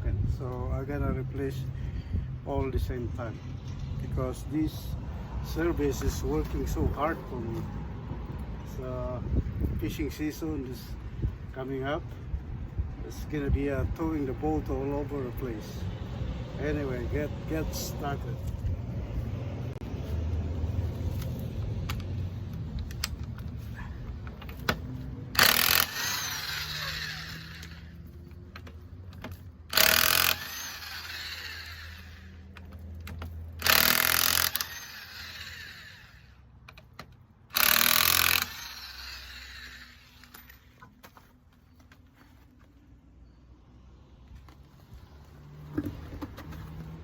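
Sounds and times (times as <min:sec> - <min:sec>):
impact wrench bursts: 0:24.5 - 0:28.0, 0:29.3 - 0:32.6, 0:33.5 - 0:36.4, 0:37.5 - 0:40.8.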